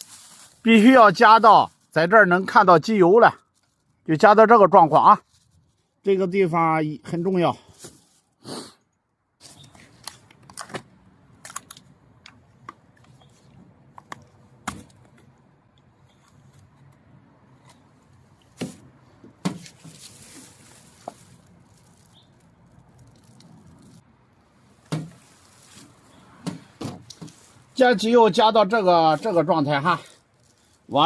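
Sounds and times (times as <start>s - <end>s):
rustling: 0.0s - 2.5s, 3.4s - 4.2s, 4.8s - 6.1s, 17.6s - 31.0s
clicks and knocks of handling: 9.6s - 17.0s.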